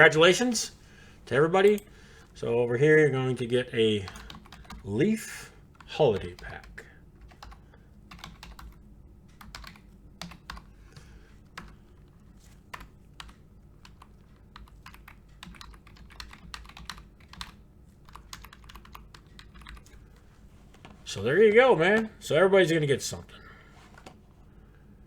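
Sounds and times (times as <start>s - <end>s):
typing on computer keyboard: 4.0s - 4.9s, 5.8s - 11.8s, 12.7s - 20.2s.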